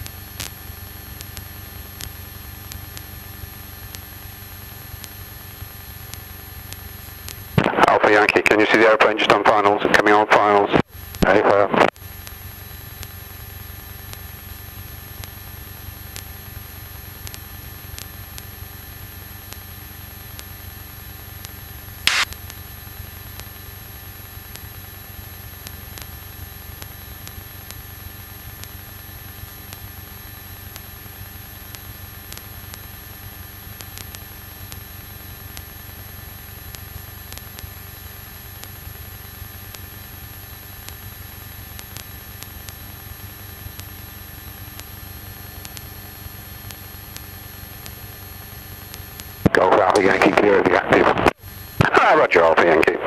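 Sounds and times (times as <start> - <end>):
propeller aircraft engine drone: 0.0 - 53.0
sharp click: 22.1 - 22.4.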